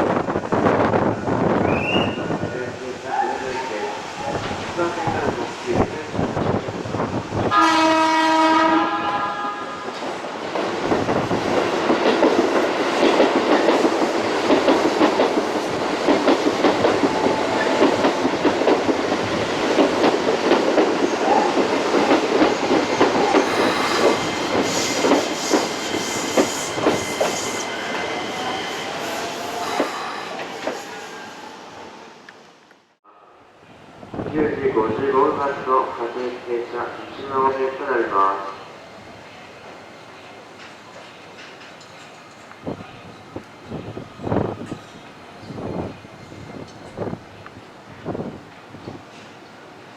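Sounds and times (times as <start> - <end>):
electric train rumbling past: 0.0 - 49.9
train horn: 7.4 - 10.0.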